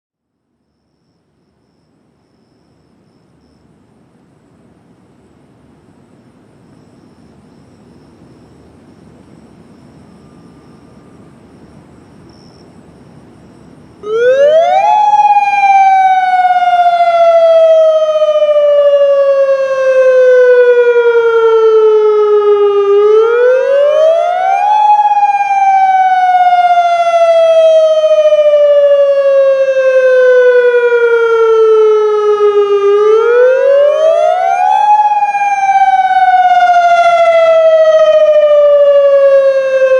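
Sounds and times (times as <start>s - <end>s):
faint background noise: 0.2s - 39.9s
outdoor warning siren sweeping: 6.8s - 39.9s.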